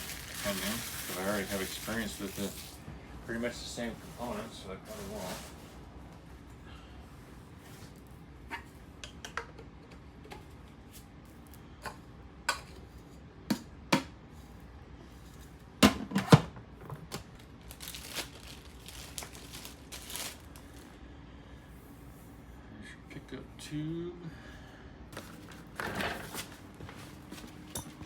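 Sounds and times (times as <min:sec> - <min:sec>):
packaging rustling: 0:00.0 - 0:02.8, 0:17.2 - 0:21.0, 0:25.2 - 0:27.6.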